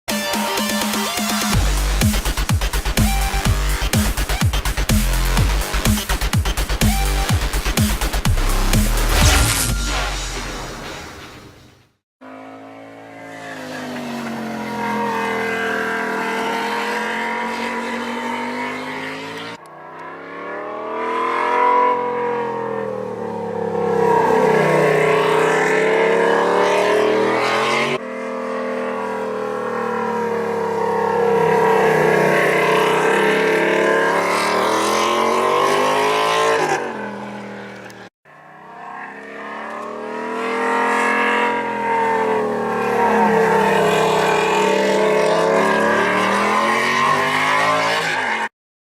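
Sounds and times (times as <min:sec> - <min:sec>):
motorcycle engine revving: 0:12.2 - 0:48.0.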